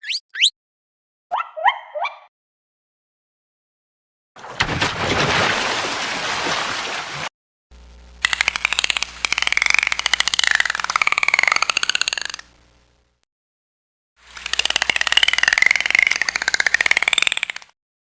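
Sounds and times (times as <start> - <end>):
animal rasping pulsed call: 0.0 - 0.5.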